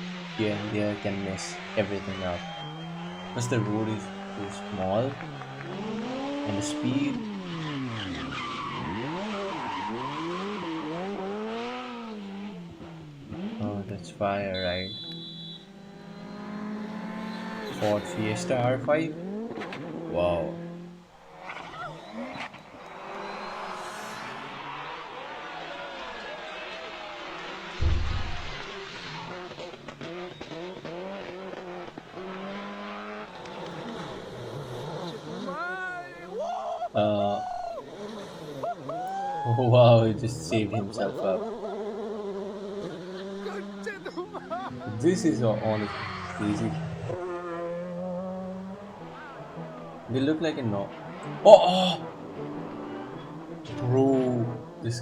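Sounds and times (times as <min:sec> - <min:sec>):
rally car engine revving: 0:00.0 - 0:39.2, 0:40.0 - 0:55.0
tyres skidding and squealing: 0:00.0 - 0:55.0
sharp exhaust pops: 0:27.7 - 0:32.1
heavy low thump: 0:27.8 - 0:28.7.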